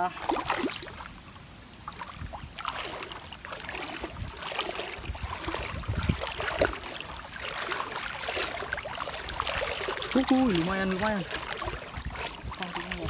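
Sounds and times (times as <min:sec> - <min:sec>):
water splashing and sloshing: 0:00.0 - 0:13.0.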